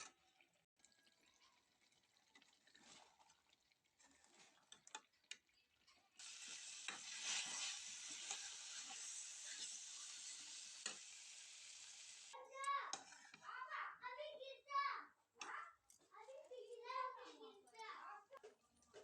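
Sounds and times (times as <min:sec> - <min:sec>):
food sizzling in hot oil: 0:05.8 - 0:13.4.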